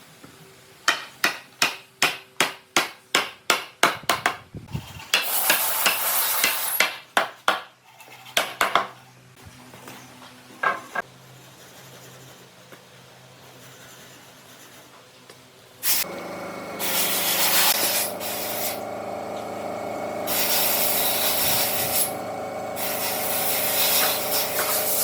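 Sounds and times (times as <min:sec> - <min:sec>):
hiss: 0:05.2 - 0:06.8, 0:15.8 - 0:16.1, 0:16.7 - 0:25.0.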